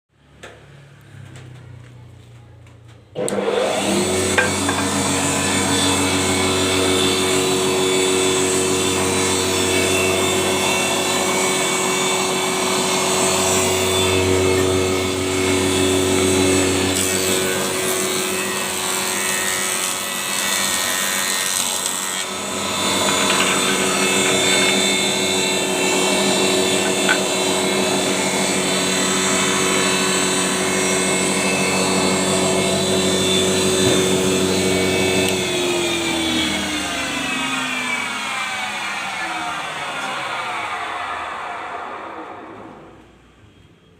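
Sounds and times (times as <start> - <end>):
power tool motor whine: 3.2 - 43.6
wood rasping: 16.0 - 28.1.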